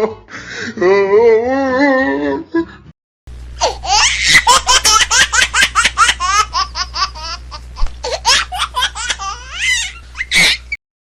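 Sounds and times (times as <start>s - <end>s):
high-pitched laughter: 3.6s - 7.4s, 8.1s - 10.8s.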